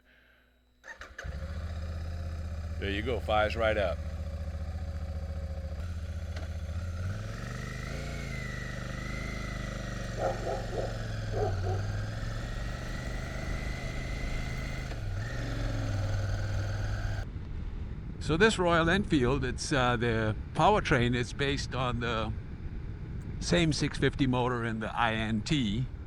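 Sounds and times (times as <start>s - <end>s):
motorcycle engine idling: 0.8s - 17.2s.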